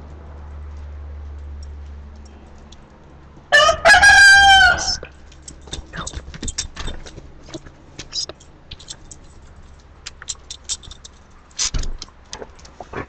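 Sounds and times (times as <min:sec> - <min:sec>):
rooster crowing: 0:03.5 - 0:05.1.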